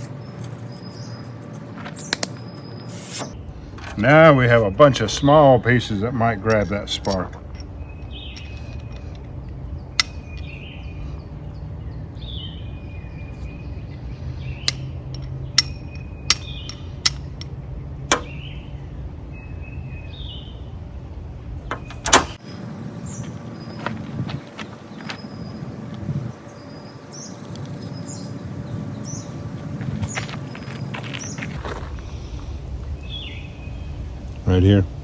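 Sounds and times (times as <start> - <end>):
sparks striking clicks: 0.0 - 3.4.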